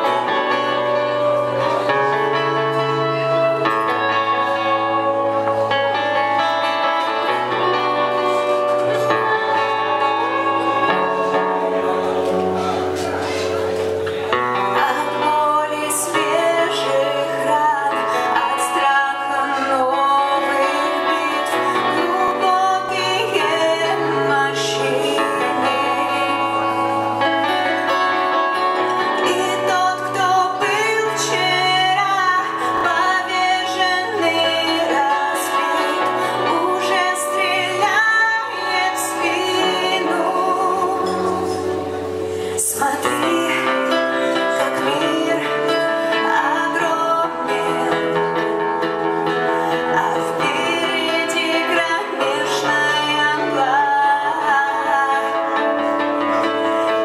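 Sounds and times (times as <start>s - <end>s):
live band playing: 0.0s - 57.0s
woman singing: 14.3s - 57.0s.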